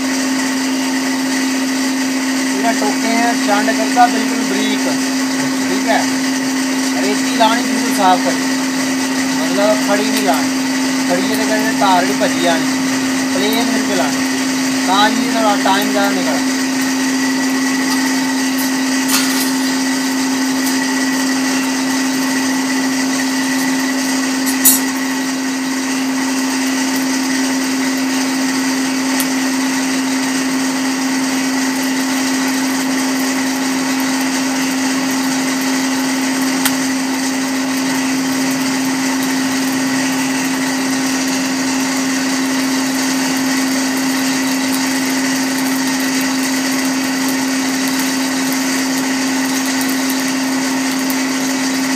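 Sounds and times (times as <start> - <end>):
forge blower humming and whirring: 0.0 - 51.9.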